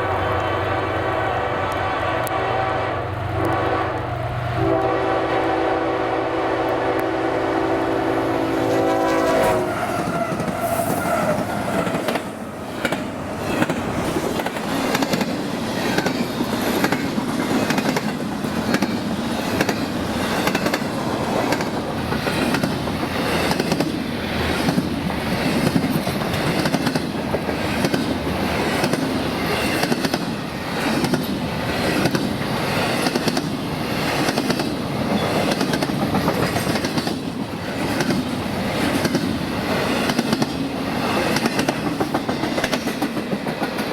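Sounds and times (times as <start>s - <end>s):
locomotive horn: 0.0s - 11.9s
train wheels clicking over rail joints: 9.4s - 43.9s.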